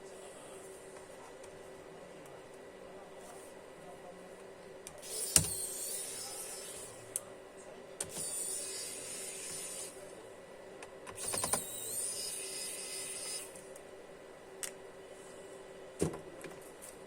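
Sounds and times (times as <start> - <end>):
high whirring: 5.0 - 7.2, 8.0 - 10.1, 11.2 - 13.6.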